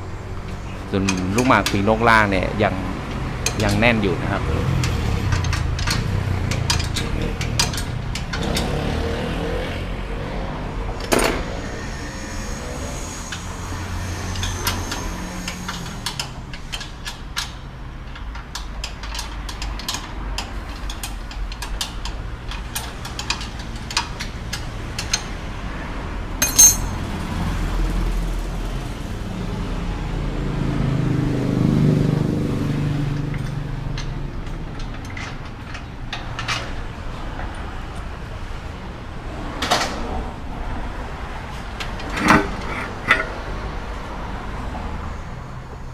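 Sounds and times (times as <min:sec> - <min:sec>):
low workshop rumble: 0:00.0 - 0:18.4, 0:26.3 - 0:27.3, 0:40.0 - 0:44.7
hand tools clinking on metal: 0:26.4 - 0:27.0, 0:41.8 - 0:43.6
sharp metallic clang: 0:26.4 - 0:27.1.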